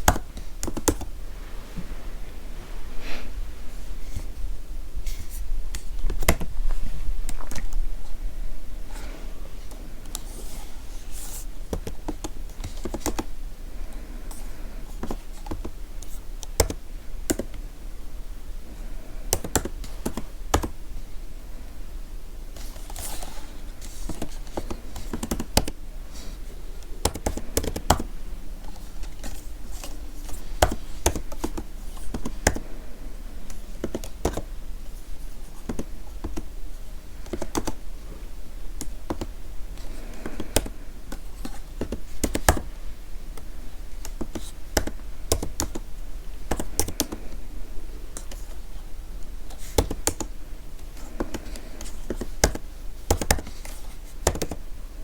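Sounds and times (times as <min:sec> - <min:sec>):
keyboard typing clicks: 0:19.3 - 0:20.8, 0:27.0 - 0:28.1, 0:37.2 - 0:37.8.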